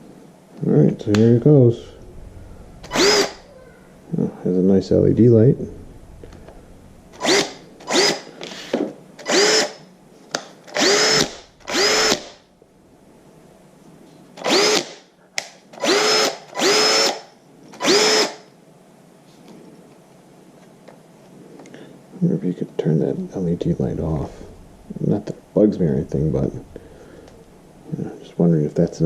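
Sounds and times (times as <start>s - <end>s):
cordless drill motor whining: 2.8s - 3.5s, 7.1s - 8.3s, 9.2s - 9.9s, 10.7s - 12.4s, 14.4s - 14.9s, 15.8s - 18.4s.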